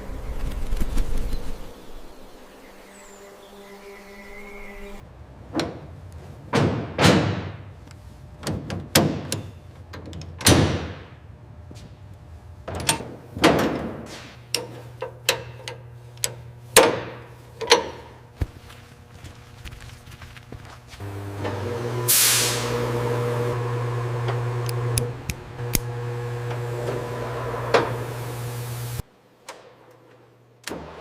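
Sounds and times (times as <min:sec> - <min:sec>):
heavy bangs and slams: 0:05.5 - 0:07.8, 0:10.4 - 0:11.2.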